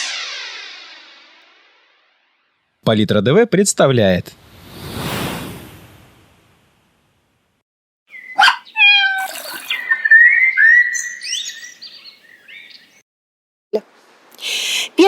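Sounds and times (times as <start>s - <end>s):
cat meowing: 8.4s - 9.7s.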